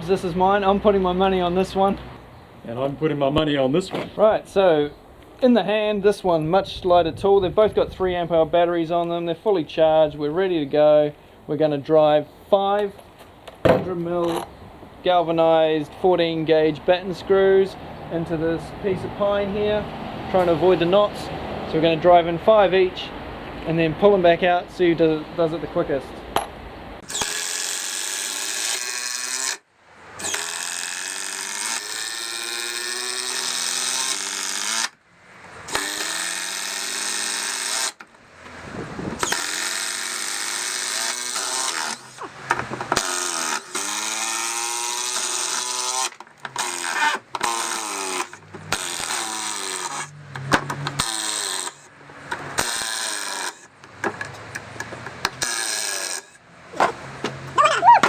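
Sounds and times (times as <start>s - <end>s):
impact drivers driving screws: 27.0s - 29.6s, 30.2s - 35.0s, 35.7s - 38.2s, 39.2s - 57.4s.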